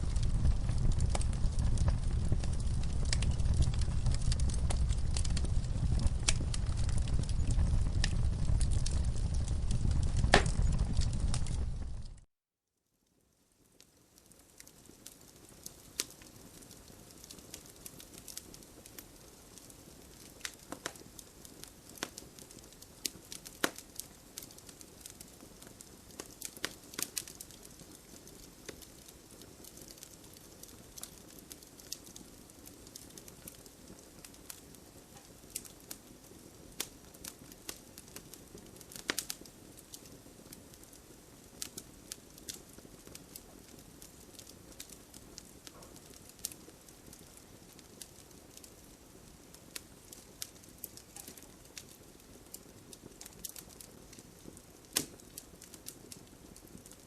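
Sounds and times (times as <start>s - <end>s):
soft steady hiss: 0.0s - 12.3s, 12.9s - 57.0s
wood fire crackling and popping: 0.0s - 12.3s, 13.1s - 57.0s.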